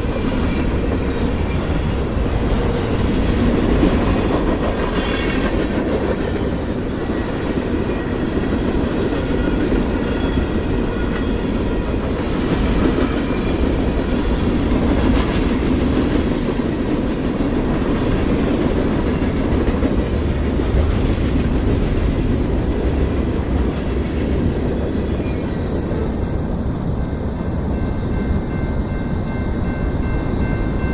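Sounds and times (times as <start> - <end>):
freight train wheels rumbling on rail: 0.0 - 30.9.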